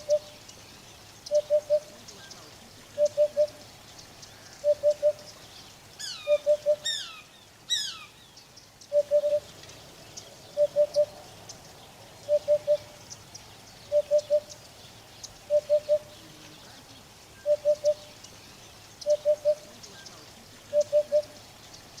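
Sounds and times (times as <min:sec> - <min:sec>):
hoopoe hooting: 0:00.0 - 0:00.4, 0:01.3 - 0:05.4, 0:06.0 - 0:08.0, 0:08.9 - 0:09.5, 0:10.5 - 0:11.2, 0:12.2 - 0:13.0, 0:13.8 - 0:14.7, 0:15.3 - 0:18.2, 0:19.0 - 0:22.0.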